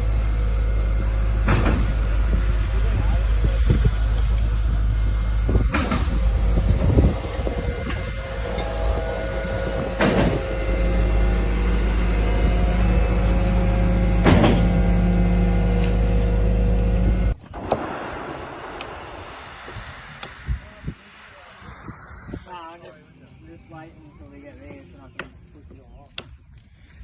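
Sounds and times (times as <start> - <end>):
large engine running: 0.0 - 17.6
steady whine: 0.0 - 25.9.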